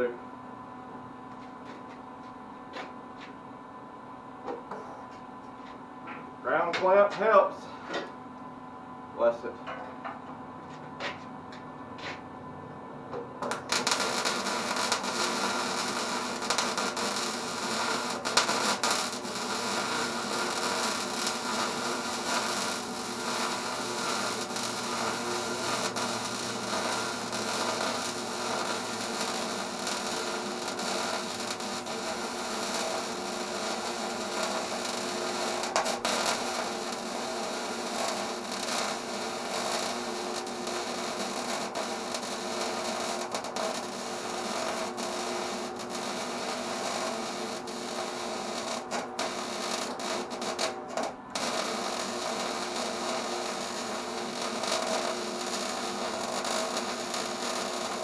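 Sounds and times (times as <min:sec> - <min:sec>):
arc welding crackling hiss: 0:13.4 - 0:58.0
sharp welding pops: 0:13.4 - 0:58.0.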